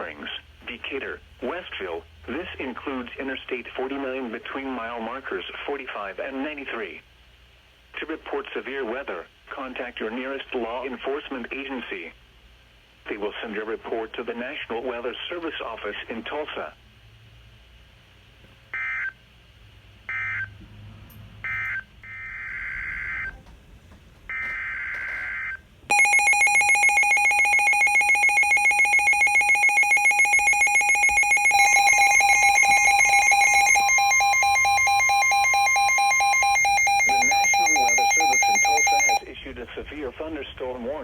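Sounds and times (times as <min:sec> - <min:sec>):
screeching digital data bursts: 0:24.3 - 0:39.2
rapidly pulsing alert tone: 0:25.3 - 0:39.2
second alert tone: 0:25.9 - 0:39.2.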